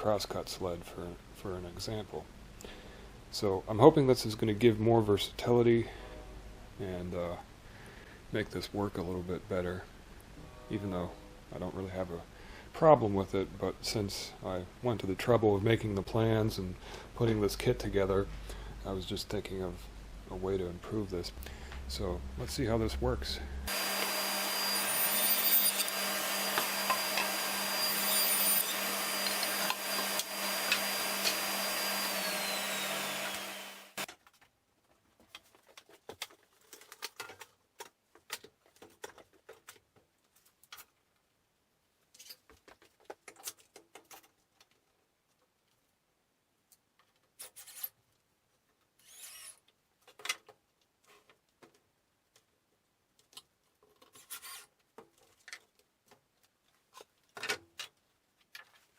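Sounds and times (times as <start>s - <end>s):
power tool whine winding down: 23.7s - 34.1s.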